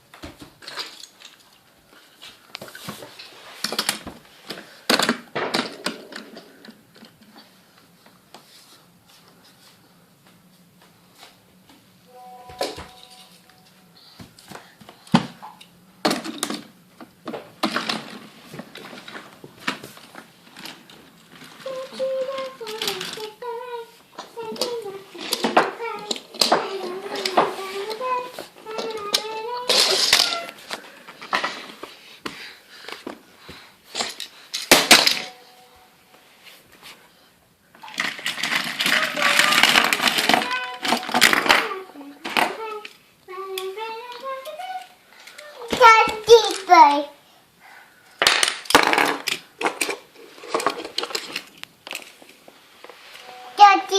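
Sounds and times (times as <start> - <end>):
toy train track knocks and clicks: 24.6 - 28.1, 28.8 - 30.5, 37.8 - 43.0, 45.3 - 46.9, 48.2 - 52.1
child's voice: 38.8 - 47.2, 53.3 - 53.9.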